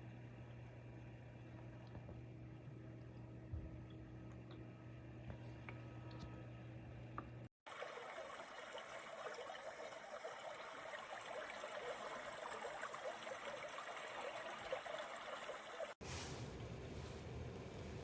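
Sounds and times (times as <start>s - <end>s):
humidifier running: 0.0s - 7.5s, 16.0s - 18.0s
water bubbling and crackling: 1.4s - 16.0s.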